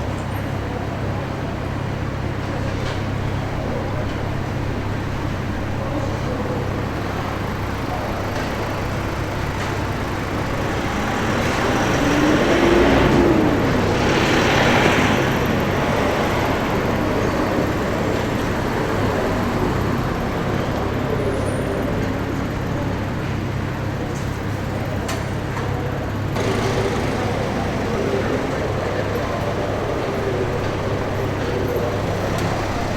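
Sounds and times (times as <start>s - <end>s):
road traffic noise: 0.0s - 32.9s
vehicle passing: 9.4s - 18.7s, 26.4s - 32.9s.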